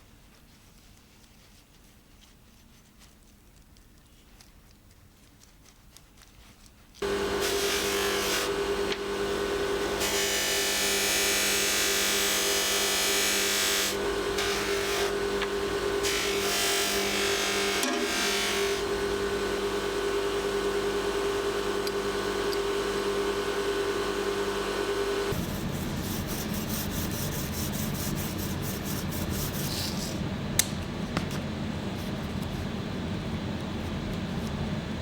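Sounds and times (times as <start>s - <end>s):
rapid rubbing strokes on metal: 25.3s - 30.2s.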